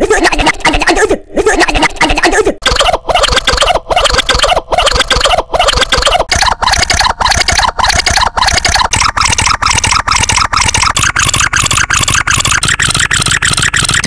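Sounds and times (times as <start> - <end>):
looped meme sound clip: 0.0 - 14.0.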